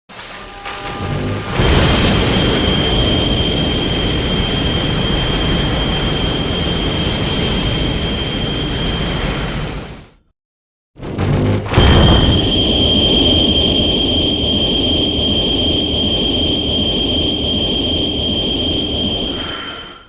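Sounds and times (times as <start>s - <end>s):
thin high whine: 0.1s - 10.2s, 11.8s - 20.0s
deep rumble: 1.0s - 9.9s
loud rushing noise: 1.0s - 10.1s.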